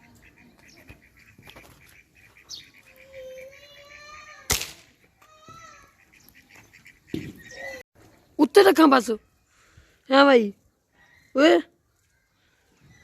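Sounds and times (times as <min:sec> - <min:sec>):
drawn-out bird call: 0:00.0 - 0:04.4
air rifle shot: 0:04.5 - 0:04.9.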